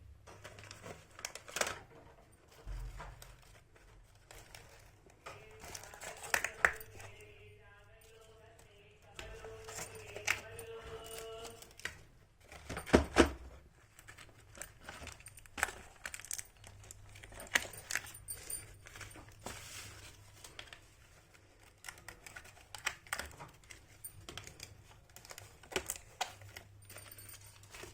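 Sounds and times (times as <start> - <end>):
packaging crinkling: 2.6 - 12.9, 13.6 - 27.9
plastic toy pieces clicking: 5.6 - 7.1.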